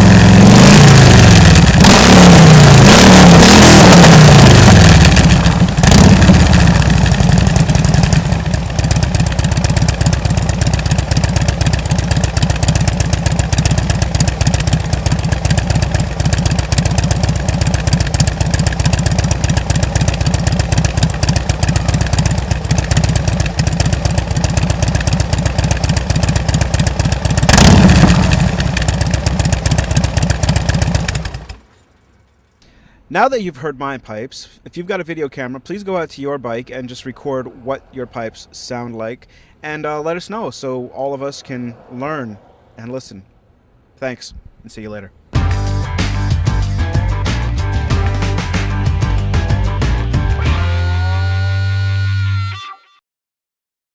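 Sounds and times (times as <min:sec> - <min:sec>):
motorcycle idling and revving: 0:00.0 - 0:32.6, 0:45.4 - 0:50.6.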